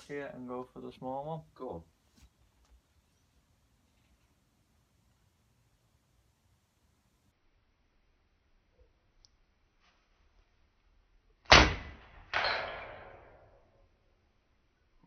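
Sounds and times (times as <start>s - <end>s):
air rifle shot crack: 11.5s - 13.0s.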